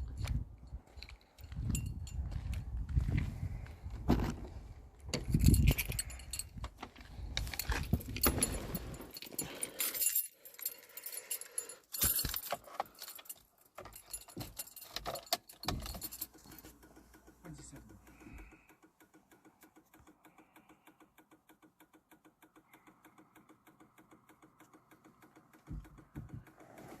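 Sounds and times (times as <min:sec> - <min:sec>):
heavy thumps: 0:03.9 - 0:06.8
keys jangling: 0:05.1 - 0:16.7.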